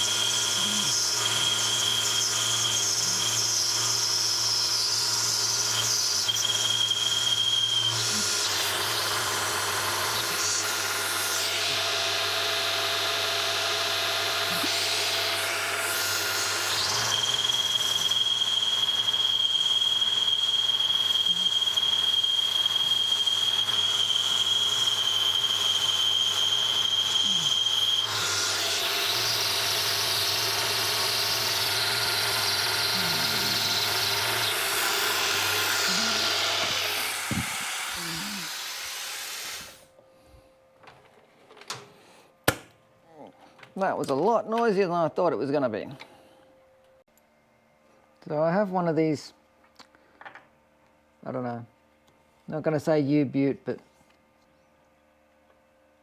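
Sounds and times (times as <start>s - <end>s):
power tool whining: 0.0s - 39.9s.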